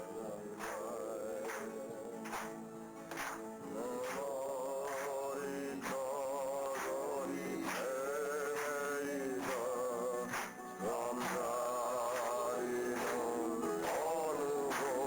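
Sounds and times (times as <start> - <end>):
person singing with vibrato: 0.0 - 2.8, 3.6 - 15.0
steady beat accompaniment: 0.0 - 4.3.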